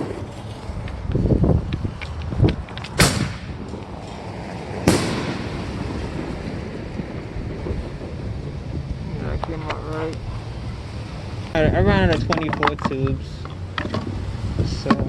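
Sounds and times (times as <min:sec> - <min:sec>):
fireworks crackles: 0:00.0 - 0:14.8
firework sharp bangs: 0:02.7 - 0:09.1.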